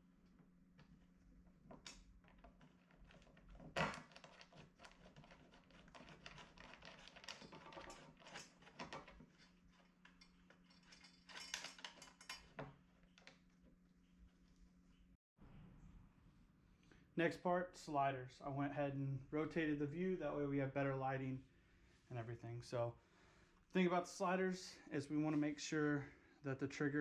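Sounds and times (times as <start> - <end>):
metal bolts clinking and rattling: 6.0 - 12.8.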